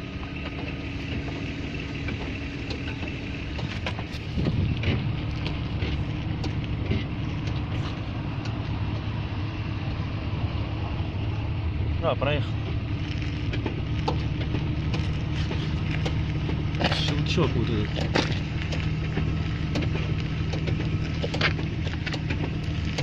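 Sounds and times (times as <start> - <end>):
car road rumble: 0.0 - 23.0
sharp clicks and knocks: 0.4 - 9.1, 12.5 - 23.0.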